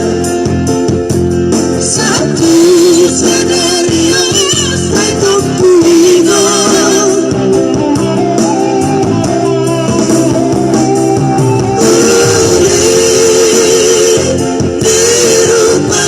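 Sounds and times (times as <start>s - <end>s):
guitar accompaniment: 0.0s - 16.0s
vocal trio singing in harmony: 1.8s - 8.8s, 11.6s - 16.0s.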